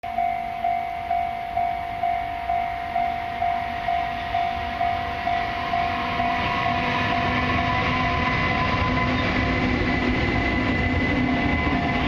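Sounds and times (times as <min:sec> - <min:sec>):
level crossing warning bell: 0:00.0 - 0:09.7.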